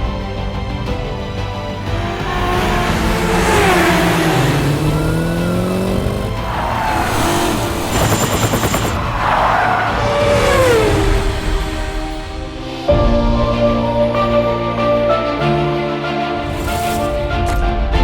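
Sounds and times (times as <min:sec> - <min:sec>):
car engines revving past: 0:01.8 - 0:12.8.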